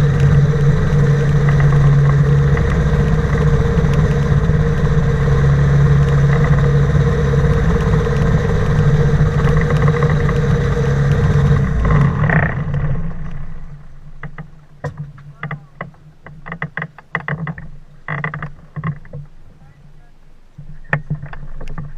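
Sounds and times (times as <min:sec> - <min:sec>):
boat engine running: 0:00.0 - 0:21.9
short knocks: 0:14.2 - 0:19.4.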